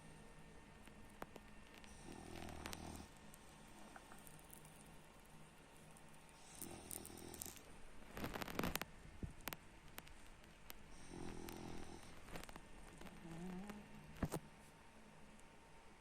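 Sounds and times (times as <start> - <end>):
dog snoring: 1.9 - 3.1, 6.4 - 7.6, 10.9 - 14.0.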